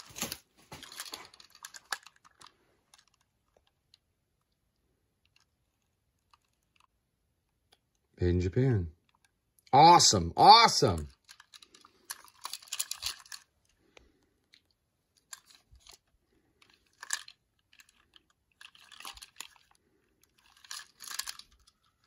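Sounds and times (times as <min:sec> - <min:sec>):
packaging crinkling: 0:00.0 - 0:03.7, 0:20.4 - 0:22.0
plastic toy clicks: 0:11.0 - 0:13.5, 0:16.6 - 0:21.8.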